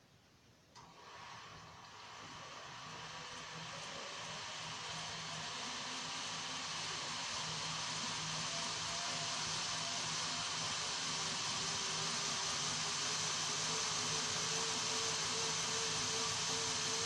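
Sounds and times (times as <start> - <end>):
lathe running with hiss and whine: 0.8 - 17.0.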